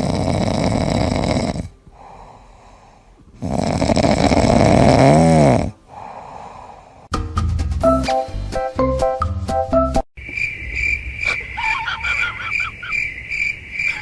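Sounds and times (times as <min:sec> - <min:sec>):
loud rasping snoring: 0:00.0 - 0:01.8, 0:03.4 - 0:05.8
breathing: 0:01.9 - 0:03.2, 0:05.9 - 0:07.1.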